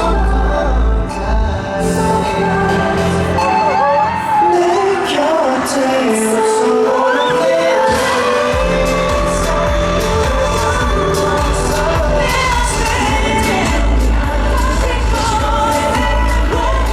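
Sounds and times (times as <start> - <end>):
heavy bass: 0.0 - 4.4, 8.5 - 16.9
person singing: 0.0 - 16.9
synths: 0.0 - 16.9.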